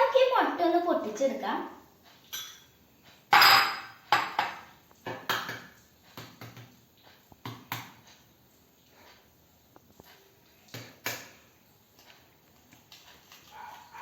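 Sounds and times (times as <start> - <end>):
egg tapped against a bowl: 4.1 - 6.7, 7.4 - 8.0.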